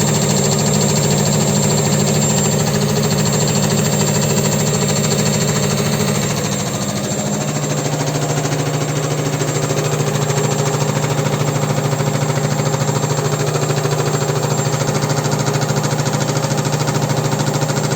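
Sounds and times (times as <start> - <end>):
washing machine motor hum: 0.0 - 17.9.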